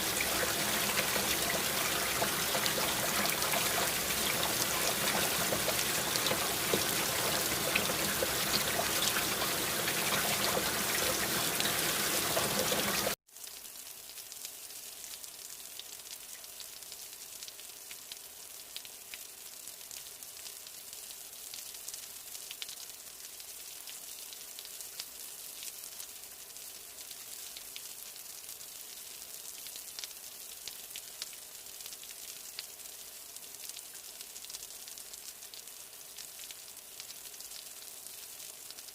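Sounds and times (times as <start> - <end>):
heavy rain: 0.0 - 13.2
light rain: 0.0 - 38.9.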